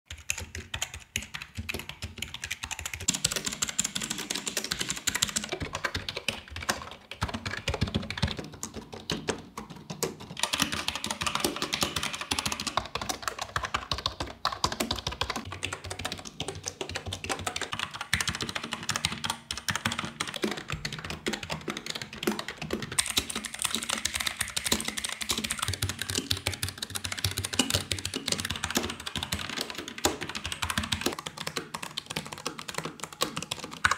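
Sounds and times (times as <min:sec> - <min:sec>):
fast typing on keyboards: 0:00.1 - 0:33.9.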